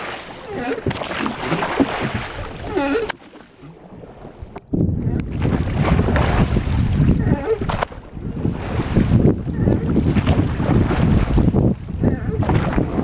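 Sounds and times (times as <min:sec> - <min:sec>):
open water washing: 0:00.0 - 0:13.0
wind buffeting microphone: 0:04.0 - 0:13.0.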